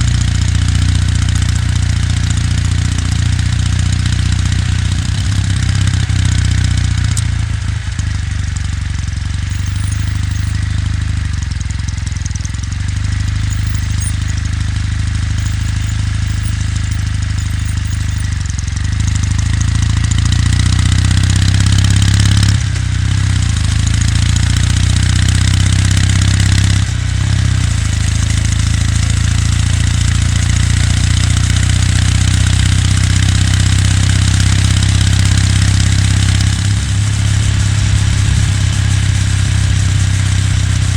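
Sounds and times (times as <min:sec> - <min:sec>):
motorcycle engine running: 0:00.0 - 0:40.9
wind and road noise: 0:34.3 - 0:40.9.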